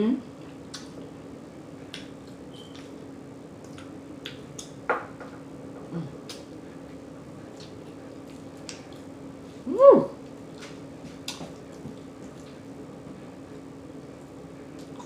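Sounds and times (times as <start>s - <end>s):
steady low hum: 0.0s - 15.0s
chewing with mouth smacks: 0.4s - 1.2s, 1.8s - 4.8s, 6.2s - 9.2s, 10.2s - 12.8s, 14.2s - 15.0s.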